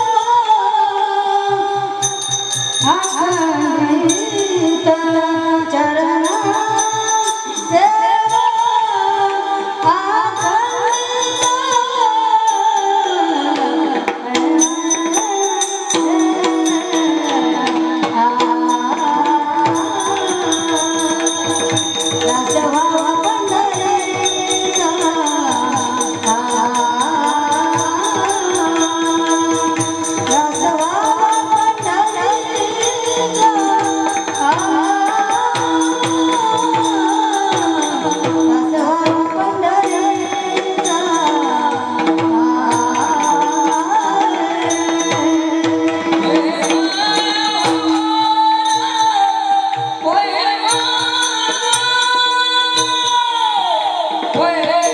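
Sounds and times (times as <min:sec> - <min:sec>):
person singing devotional melody: 0:00.0 - 0:54.9
held accompaniment: 0:01.3 - 0:54.9
metal percussion jingling: 0:14.6 - 0:49.9.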